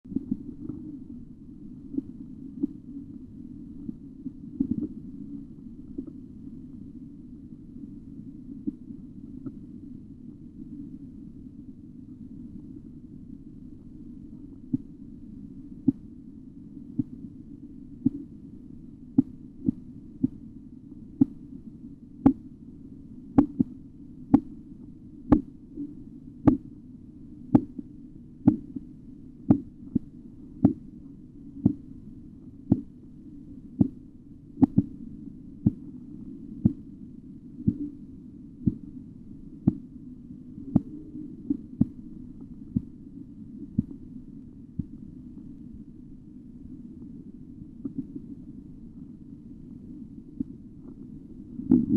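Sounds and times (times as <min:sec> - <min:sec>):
steady low hum: 0:00.0 - 0:51.9
heartbeat taps through stethoscope: 0:17.0 - 0:17.2, 0:19.2 - 0:20.4, 0:22.2 - 0:22.4, 0:23.4 - 0:24.5, 0:25.3 - 0:25.5, 0:26.4 - 0:26.7, 0:27.5 - 0:27.8, 0:28.4 - 0:28.9, 0:29.5 - 0:30.9, 0:31.6 - 0:31.8, 0:32.7 - 0:32.9, 0:33.8 - 0:34.0, 0:34.6 - 0:35.0, 0:35.6 - 0:35.9, 0:36.6 - 0:36.9, 0:37.6 - 0:38.0, 0:38.6 - 0:38.9, 0:39.6 - 0:39.9, 0:40.7 - 0:42.0, 0:43.7 - 0:44.0, 0:44.8 - 0:45.0, 0:51.6 - 0:51.9.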